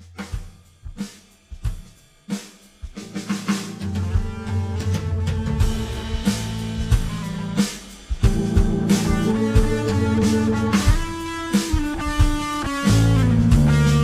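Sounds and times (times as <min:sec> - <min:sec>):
drum kit hits: 0:00.0 - 0:14.0
bass and sustained instruments: 0:03.0 - 0:11.7, 0:12.7 - 0:14.0.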